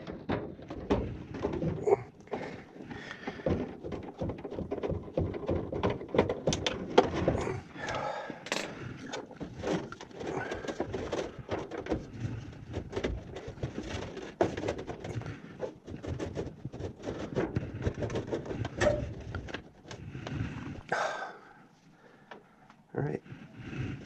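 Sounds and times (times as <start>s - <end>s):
hands clicking and knocking plastic parts: 0.0s - 21.0s.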